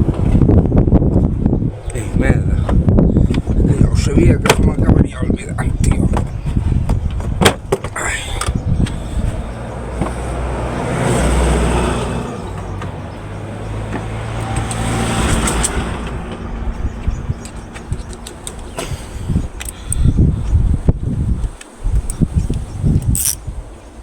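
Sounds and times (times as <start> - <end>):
tyre and road noise: 0.0 - 24.0
vehicle engine hum: 5.6 - 21.5.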